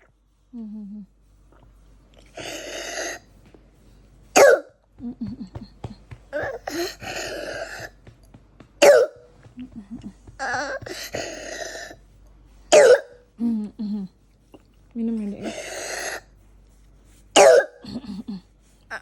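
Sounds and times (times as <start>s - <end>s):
child coughing: 4.4s - 4.7s, 6.4s - 8.0s, 8.8s - 9.2s, 10.4s - 12.0s, 12.7s - 13.2s, 17.4s - 18.3s.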